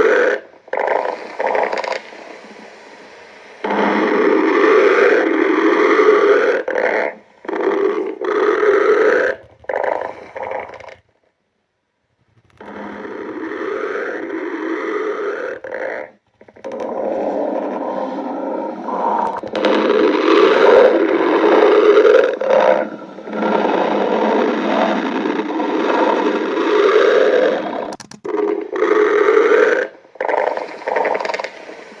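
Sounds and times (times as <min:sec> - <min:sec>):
stomach growling: 0:00.0 - 0:11.4, 0:12.1 - 0:32.0.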